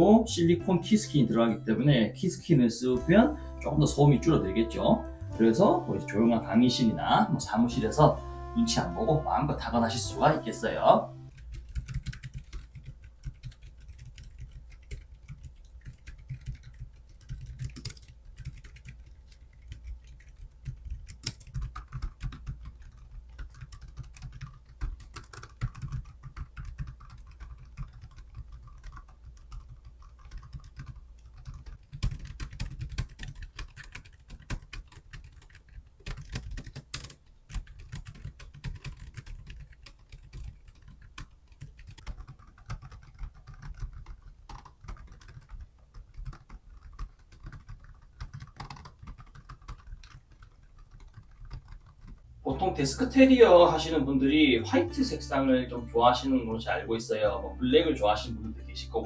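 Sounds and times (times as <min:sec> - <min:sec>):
typing on a low-profile keyboard: 0:11.3 - 0:52.3.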